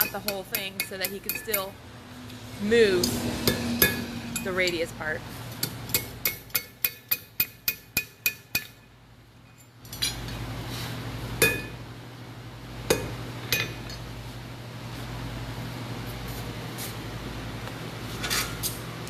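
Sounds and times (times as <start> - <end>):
hammer striking iron on anvil: 0.0 - 1.8, 3.0 - 4.9, 5.5 - 8.9, 11.4 - 11.8, 12.9 - 14.0.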